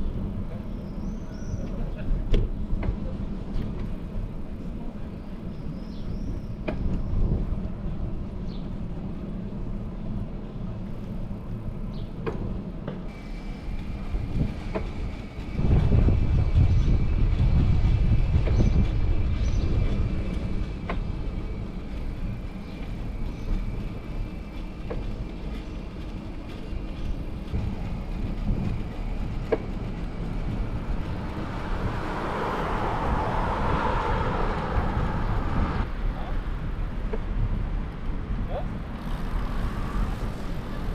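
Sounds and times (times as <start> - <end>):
wind rumbling on microphone: 0.0 - 40.9
traffic hiss: 13.1 - 16.1.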